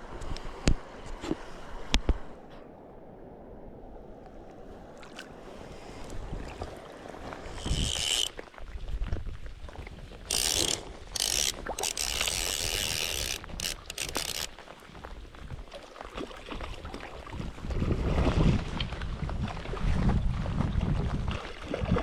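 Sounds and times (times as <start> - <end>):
fishing reel ratchet clicking: 7.5 - 8.4, 10.3 - 14.5
wind buffeting microphone: 17.3 - 22.0.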